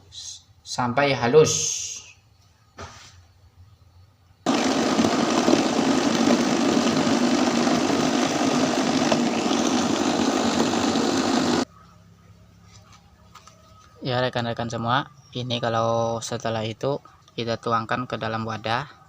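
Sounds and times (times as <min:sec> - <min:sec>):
electric blender running: 0:04.5 - 0:11.7.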